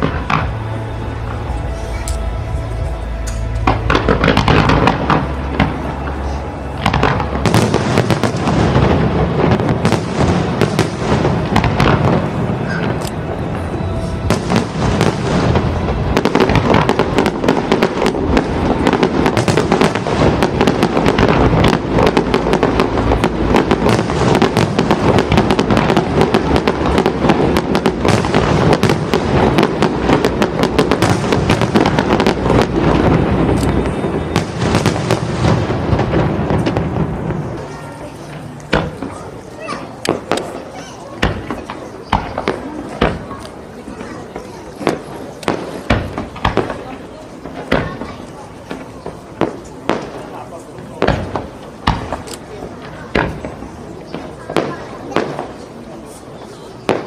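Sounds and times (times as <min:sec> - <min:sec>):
fireworks bangs and crackling: 0:00.0 - 0:57.0.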